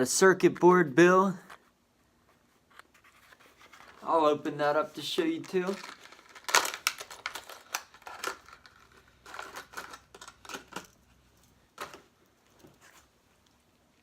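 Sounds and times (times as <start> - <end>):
packaging crinkling and tearing: 5.0 - 11.0.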